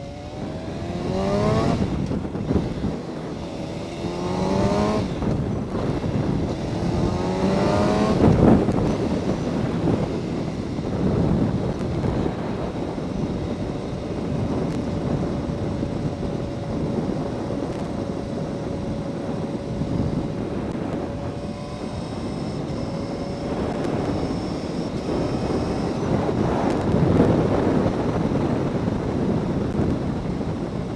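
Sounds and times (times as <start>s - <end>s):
motorcycle engine cruising: 0.0s - 30.9s
wind rush on microphone: 0.0s - 30.9s.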